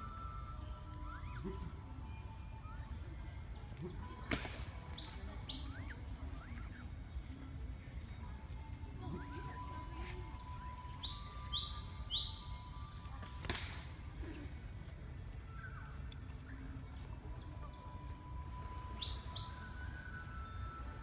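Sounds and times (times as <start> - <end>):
birds calling: 3.2 - 7.4, 9.0 - 12.7.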